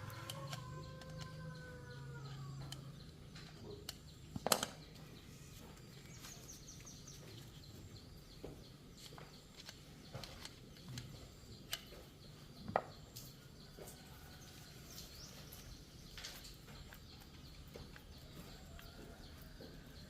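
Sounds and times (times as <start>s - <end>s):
rooster crowing: 0.0s - 2.9s.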